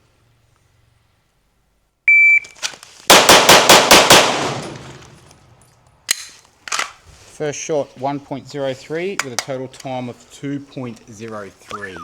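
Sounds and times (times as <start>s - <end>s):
shot timer beep: 2.1s - 2.5s
rapid pistol shots: 3.1s - 5.0s
gunshot echo: 3.1s - 5.1s.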